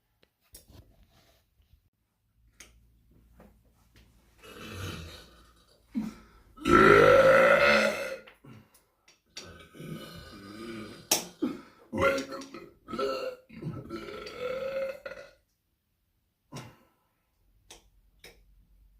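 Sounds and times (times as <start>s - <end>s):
person burping: 4.4s - 8.7s, 9.4s - 15.4s.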